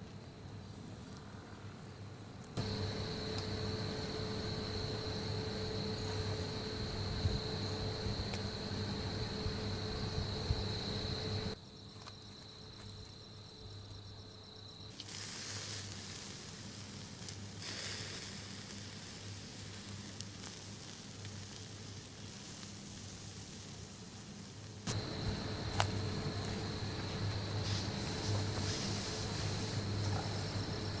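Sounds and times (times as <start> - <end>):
food sizzling in a frying pan: 14.9 - 30.6.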